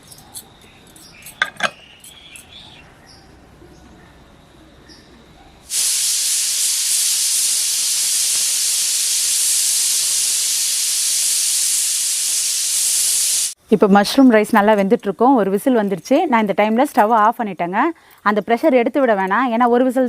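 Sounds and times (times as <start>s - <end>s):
pressure cooker whistle hissing: 5.7s - 13.6s.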